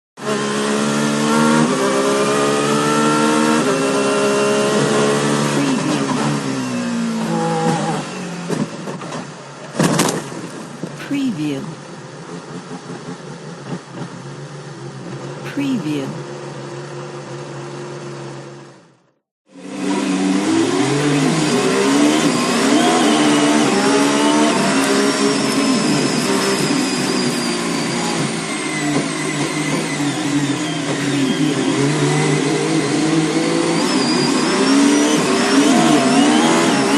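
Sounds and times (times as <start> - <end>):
racing car engine accelerating: 0.2 - 9.1, 19.5 - 36.9.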